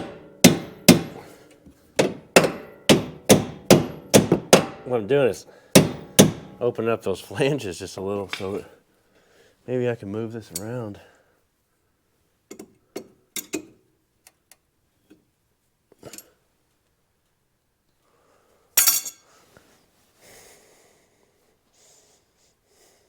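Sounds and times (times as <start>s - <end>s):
metal tools clinking: 18.8s - 19.3s.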